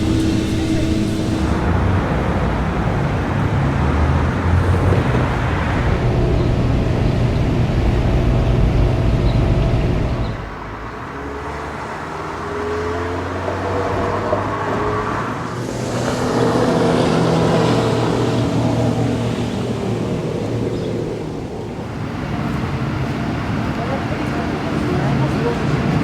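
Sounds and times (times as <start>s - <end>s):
faint rising whines: 0.0s - 3.8s
vehicle engine rumble: 0.0s - 26.0s.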